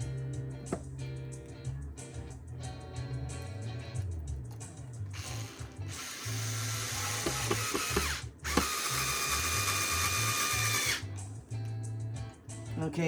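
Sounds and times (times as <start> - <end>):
cordless screwdriver motor whine: 5.2 - 11.0.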